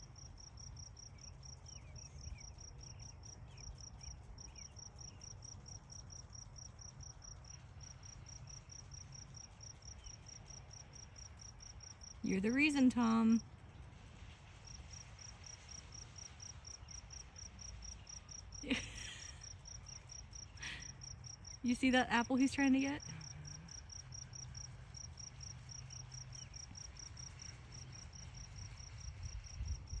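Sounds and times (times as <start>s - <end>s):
cricket chirping: 0.0s - 12.2s, 14.6s - 21.7s, 22.4s - 30.0s
faint low rumble: 11.2s - 30.0s.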